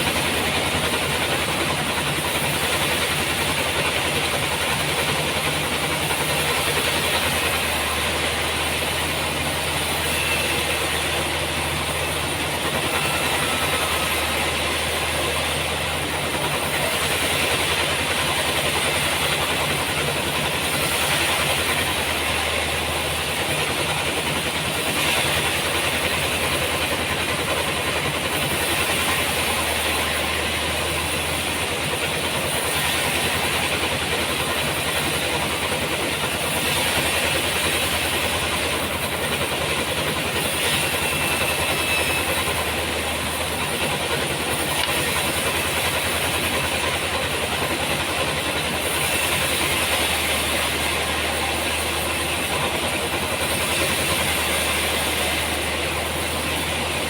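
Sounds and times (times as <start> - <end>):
sawmill machine drone: 0.0 - 57.0.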